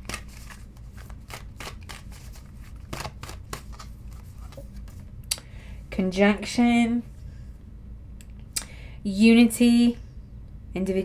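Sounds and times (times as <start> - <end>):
cards being shuffled: 0.0 - 5.1.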